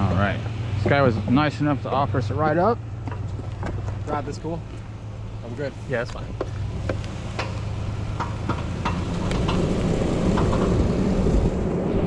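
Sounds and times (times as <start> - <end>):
vehicle engine pulling away: 0.0 - 12.0
sharp knocks and clicks: 3.0 - 4.0, 6.4 - 10.8.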